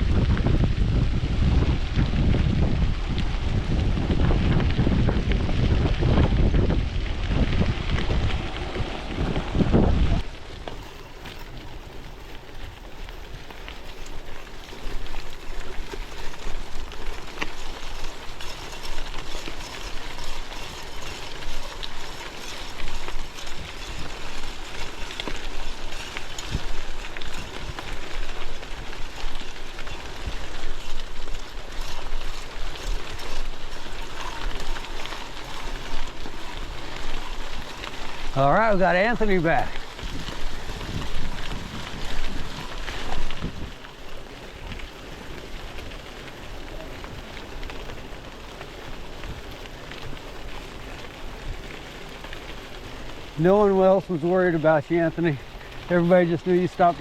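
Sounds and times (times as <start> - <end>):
wind noise on camera: 0.0 - 10.3, 11.4 - 43.9
bike tyres rolling over gravel: 0.0 - 57.0.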